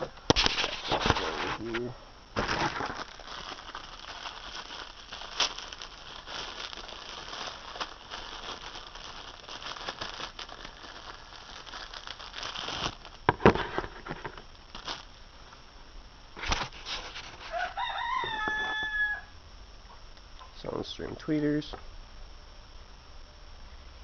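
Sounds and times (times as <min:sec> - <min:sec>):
packaging crinkling: 0:00.3 - 0:15.1, 0:16.4 - 0:19.0.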